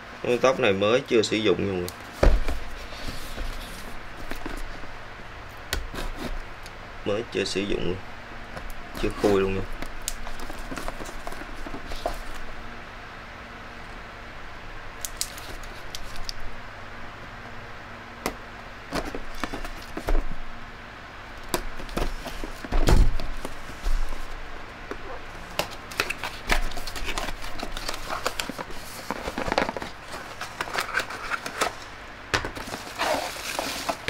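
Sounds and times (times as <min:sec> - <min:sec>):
low electrical hum: 0:00.0 - 0:34.0
packaging rustling: 0:09.0 - 0:12.6, 0:25.5 - 0:34.0.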